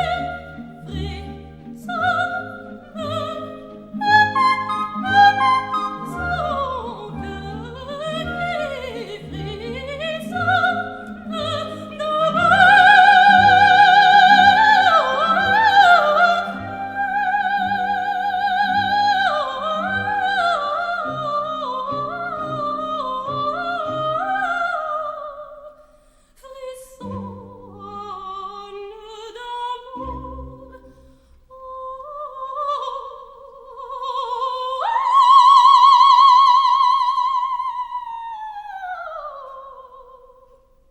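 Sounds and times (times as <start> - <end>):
orchestra playing: 0.0 - 24.4
operatic soprano singing: 0.0 - 25.8, 26.4 - 40.7.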